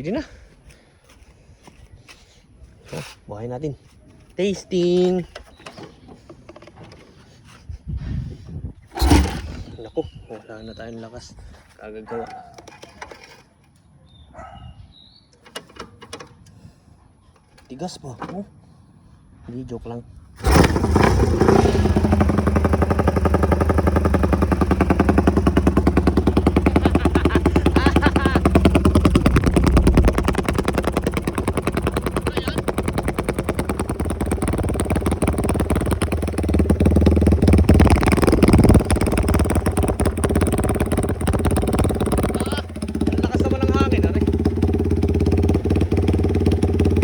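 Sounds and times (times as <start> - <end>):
motorcycle engine revving: 8.9 - 9.9, 20.4 - 47.0.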